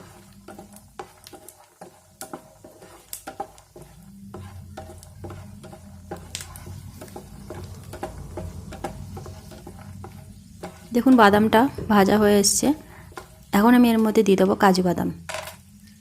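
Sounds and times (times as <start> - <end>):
spatula scraping pan: 0.0 - 14.2
peanuts sizzling in oil: 0.0 - 16.0
steady low hum: 2.4 - 14.4.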